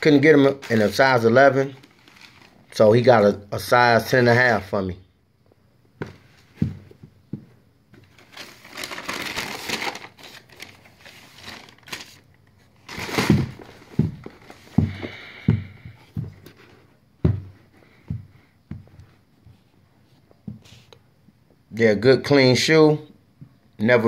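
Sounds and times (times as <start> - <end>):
tissue paper crinkling: 0.4 - 2.8, 8.0 - 14.7
box and shoes thumping: 6.0 - 7.5, 13.0 - 16.5, 17.2 - 18.9.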